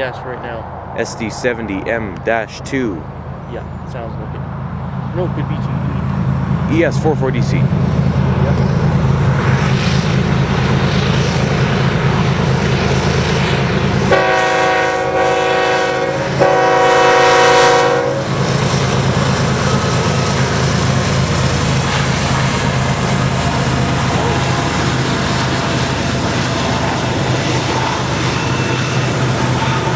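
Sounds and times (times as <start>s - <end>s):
diesel locomotive engine rumbling: 0.0s - 29.9s
locomotive air horn blasts: 14.1s - 18.3s.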